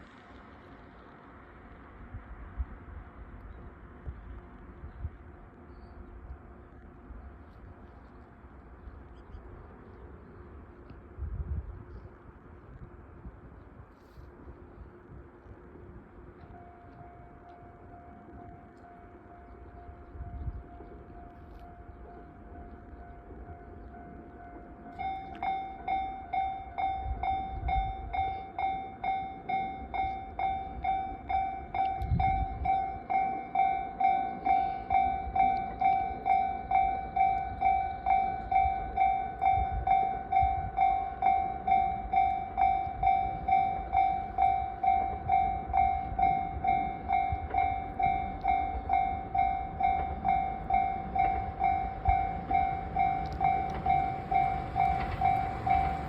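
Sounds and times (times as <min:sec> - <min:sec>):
faint steady tone: 0:02.9 - 0:56.0
level crossing bell ringing: 0:24.6 - 0:56.0.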